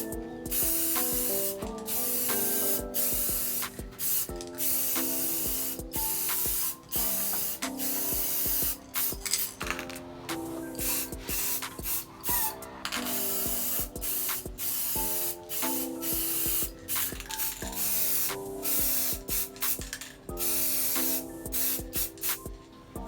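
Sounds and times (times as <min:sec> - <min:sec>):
spray paint hissing: 0:00.0 - 0:22.5
background music: 0:00.0 - 0:23.0.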